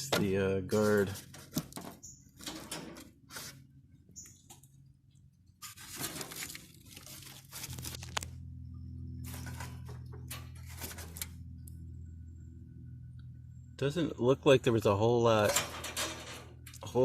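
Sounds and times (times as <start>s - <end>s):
metal and plastic parts scraping: 0.0s - 3.6s, 5.6s - 8.3s, 9.2s - 11.4s, 15.4s - 16.8s
steady low hum: 0.0s - 17.0s.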